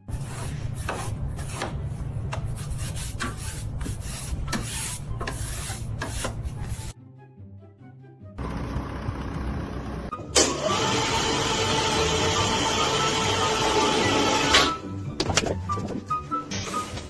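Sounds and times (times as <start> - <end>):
rough rasping and scraping: 0.1 - 7.0.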